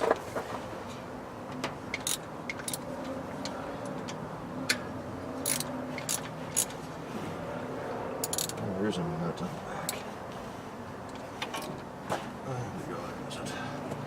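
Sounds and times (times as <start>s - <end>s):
wrench clinking against metal: 1.9s - 2.9s, 5.4s - 6.8s, 8.2s - 8.6s.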